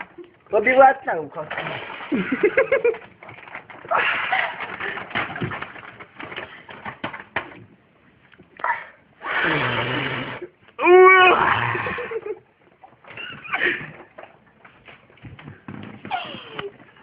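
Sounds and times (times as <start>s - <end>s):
man's strained cry: 10.8s - 12.2s.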